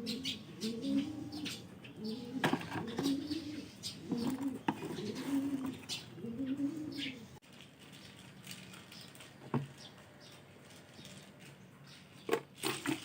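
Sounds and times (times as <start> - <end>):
pigeons cooing: 0.0 - 7.4.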